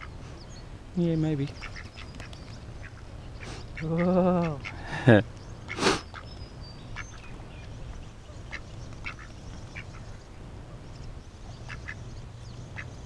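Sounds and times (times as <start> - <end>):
ducks quacking: 0.0 - 0.3, 1.4 - 13.0.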